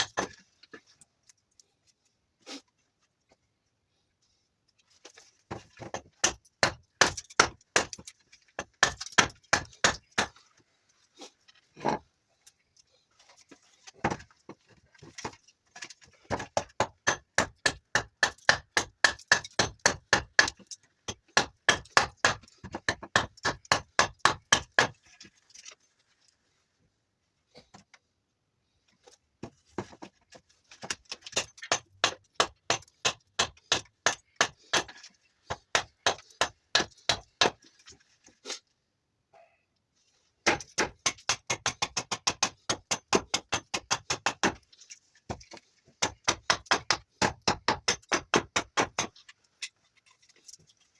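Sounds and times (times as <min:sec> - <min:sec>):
axe chopping wood: 0:05.8 - 0:10.4, 0:16.3 - 0:25.0, 0:30.8 - 0:37.6, 0:40.4 - 0:44.6, 0:45.3 - 0:49.1.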